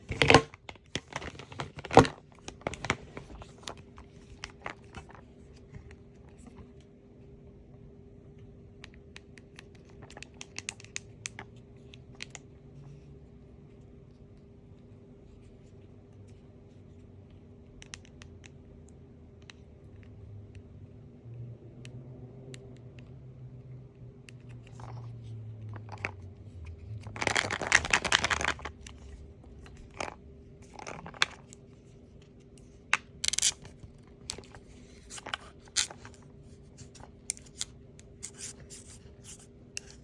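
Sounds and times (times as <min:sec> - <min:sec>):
faint steady hum: 0:00.0 - 0:40.0
packaging taps clicks and crinkles: 0:00.1 - 0:05.2, 0:08.9 - 0:12.4, 0:26.9 - 0:31.7.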